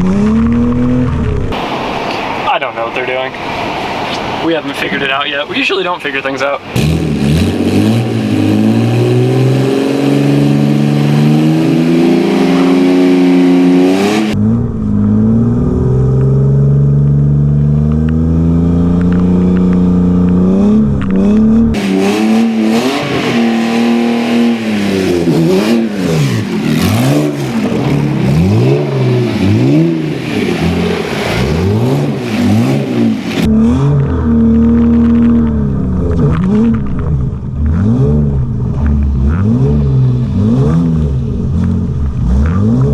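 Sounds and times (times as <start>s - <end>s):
kart engine revving hard: 6.6s - 14.5s, 20.5s - 35.6s.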